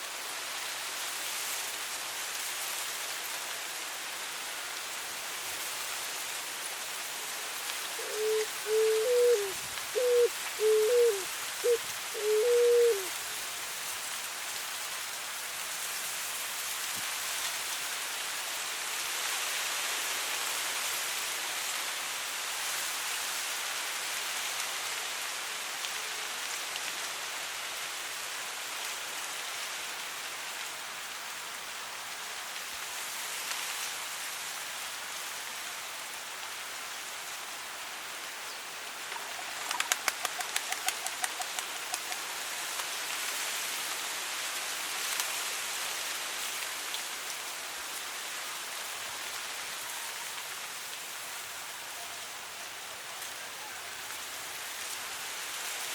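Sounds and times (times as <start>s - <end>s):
wind rustling through dry grass: 0.0s - 55.9s
dove cooing: 8.0s - 13.1s, 39.1s - 42.3s.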